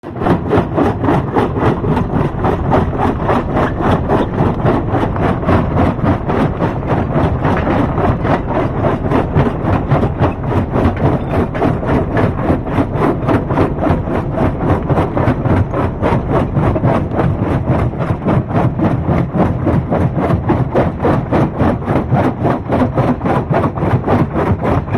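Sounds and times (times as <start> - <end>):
rock crusher machinery pulsing: 0.0 - 24.9.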